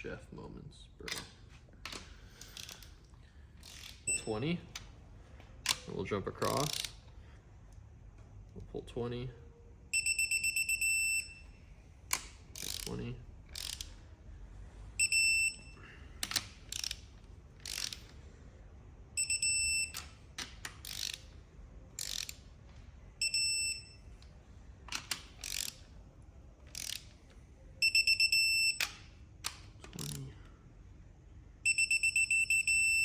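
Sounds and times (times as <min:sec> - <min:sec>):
ratchet strokes: 0:03.6 - 0:04.1, 0:17.6 - 0:18.2, 0:20.8 - 0:21.3, 0:22.0 - 0:22.4, 0:25.4 - 0:25.8, 0:26.7 - 0:27.1
torque wrench beeps: 0:03.6 - 0:04.4, 0:09.9 - 0:11.6, 0:15.0 - 0:17.0, 0:19.2 - 0:20.2, 0:23.2 - 0:24.2, 0:27.8 - 0:29.0, 0:31.6 - 0:33.0.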